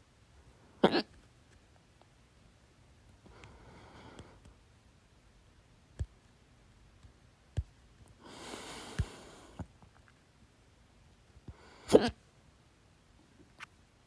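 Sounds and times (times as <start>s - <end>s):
person hiccuping: 0.8s - 1.1s, 11.9s - 12.2s.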